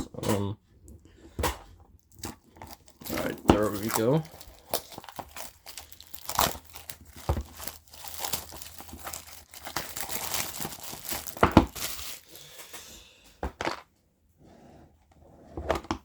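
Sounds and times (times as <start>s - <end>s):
packaging tearing and crinkling: 2.0s - 12.6s.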